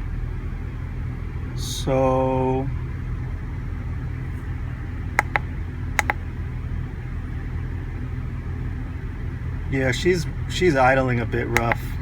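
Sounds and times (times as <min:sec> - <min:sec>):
short sharp clicks: 0:05.2 - 0:05.4, 0:06.0 - 0:06.2, 0:11.6 - 0:11.8.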